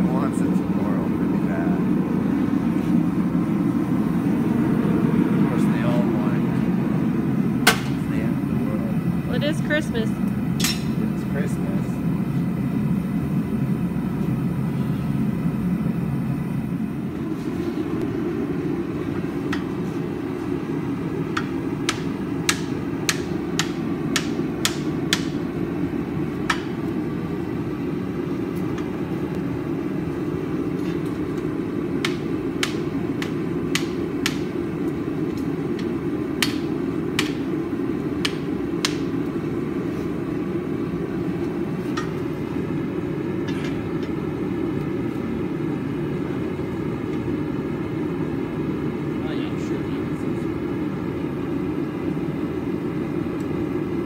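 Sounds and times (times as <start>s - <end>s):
hammer striking iron: 7.6s - 8.0s, 10.6s - 11.0s, 21.3s - 25.4s, 26.4s - 26.8s, 32.0s - 34.6s, 35.8s - 37.5s, 38.2s - 39.2s.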